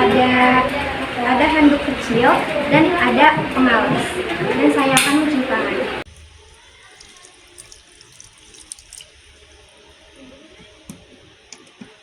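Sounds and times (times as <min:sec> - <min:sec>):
light splashes: 0:06.1 - 0:11.9
tap water running into sink: 0:06.1 - 0:12.0.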